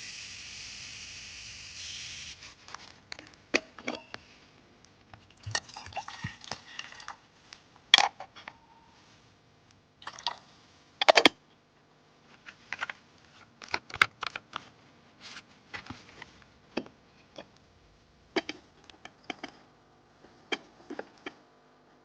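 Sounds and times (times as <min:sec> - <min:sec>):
sharp clicks and light knocks: 0:13.6 - 0:14.7.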